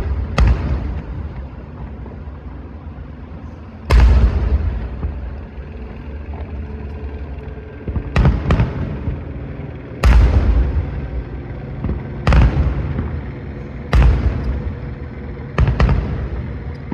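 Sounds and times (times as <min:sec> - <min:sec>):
fireworks booming: 0:00.0 - 0:02.2, 0:03.9 - 0:05.6, 0:07.8 - 0:16.9.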